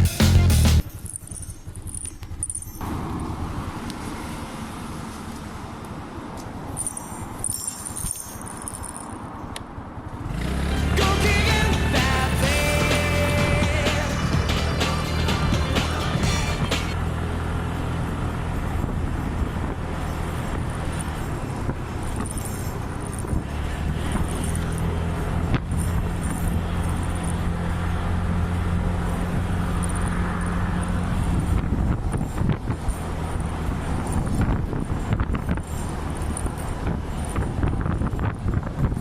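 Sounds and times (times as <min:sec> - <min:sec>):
scooter engine idling: 0:10.2 - 0:17.0.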